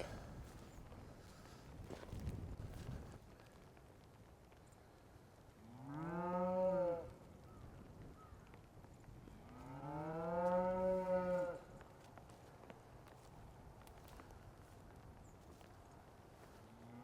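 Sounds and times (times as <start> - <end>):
cow mooing: 9.6 - 11.6.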